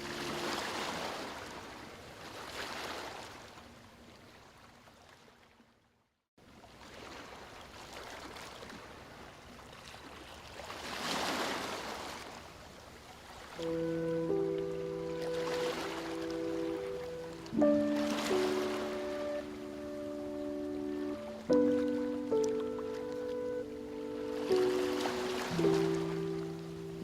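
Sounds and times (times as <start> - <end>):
sea waves washing in: 0.0 - 3.4, 13.2 - 27.0.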